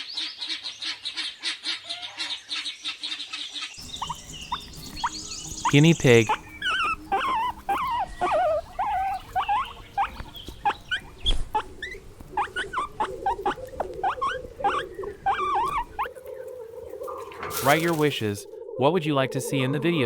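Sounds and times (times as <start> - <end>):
guinea pig squeaking: 3.8 - 16.4, 17.0 - 18.4.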